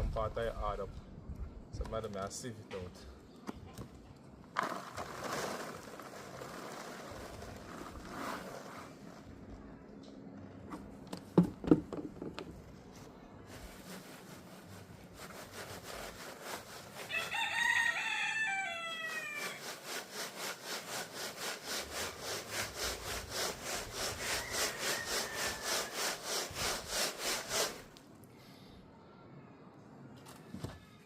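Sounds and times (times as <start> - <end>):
powder scraping through a sieve: 4.6 - 9.4, 13.4 - 28.0
rooster crowing: 17.1 - 19.6, 24.1 - 26.2.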